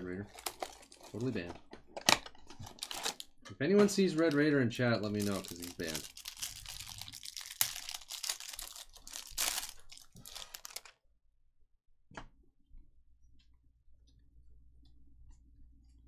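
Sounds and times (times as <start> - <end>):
plastic wrappers crinkling and tearing: 0.0 - 11.0.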